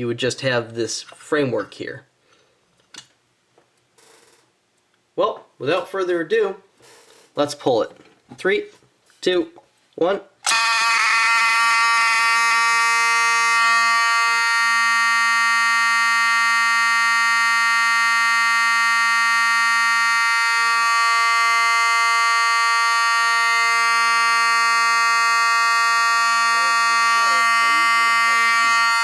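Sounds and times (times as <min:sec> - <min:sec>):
fire alarm horn buzzing: 0:10.4 - 0:29.0.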